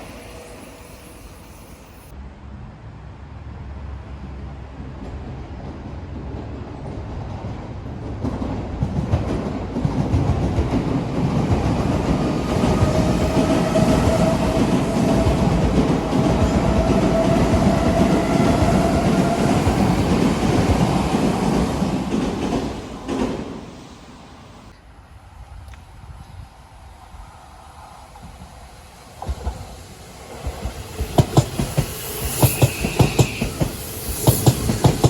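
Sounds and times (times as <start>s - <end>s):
electric train passing: 0.0s - 2.5s, 3.3s - 25.4s, 26.5s - 35.0s
train wheel clatter: 6.2s - 23.7s, 28.2s - 35.0s.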